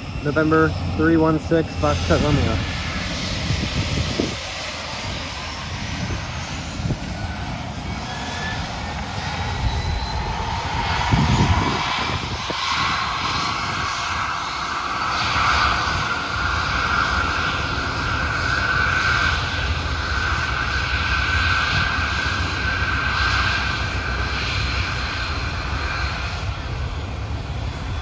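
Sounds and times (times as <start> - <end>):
low engine rumble: 0.0 - 15.0
aircraft engine whine rising: 0.0 - 28.0.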